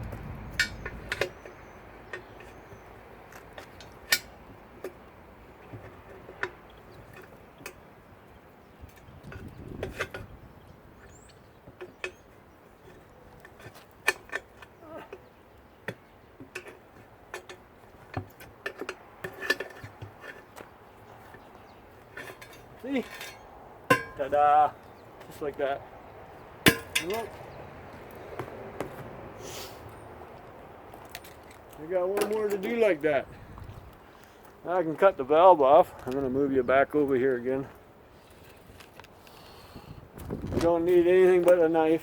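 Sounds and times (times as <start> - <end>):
metal clinks and knocks: 22.0 - 24.4, 26.6 - 27.5.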